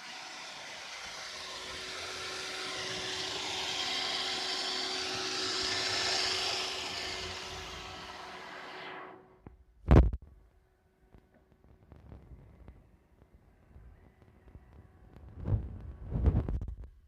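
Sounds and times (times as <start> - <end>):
robot vacuum whirring: 0.0 - 9.2.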